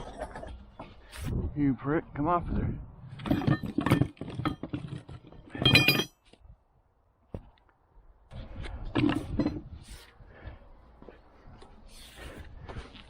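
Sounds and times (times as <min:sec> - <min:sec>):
metal tools clinking and rattling: 0:03.1 - 0:06.3.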